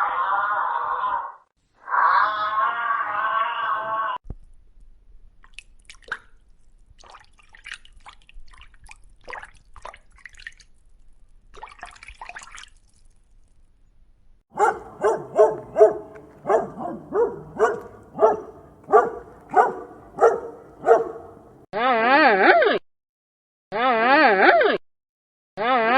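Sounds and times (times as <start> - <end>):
dog barking: 14.6 - 21.6.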